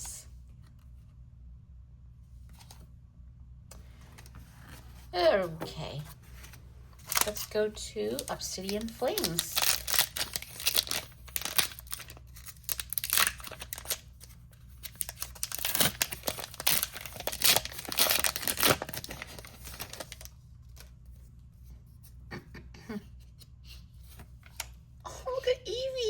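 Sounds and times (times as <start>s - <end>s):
foil wrapper tearing and crinkling: 7.0s - 20.3s.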